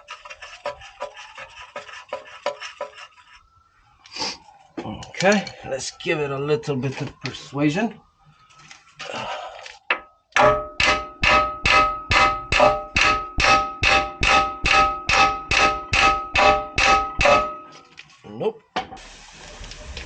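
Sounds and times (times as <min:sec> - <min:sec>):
hammer ringing on steel: 0:10.4 - 0:17.7.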